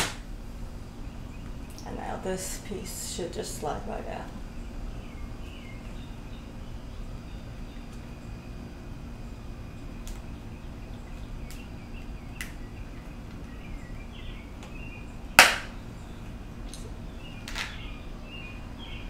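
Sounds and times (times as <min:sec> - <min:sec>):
loud snap: 0:00.0 - 0:00.3, 0:15.4 - 0:15.8.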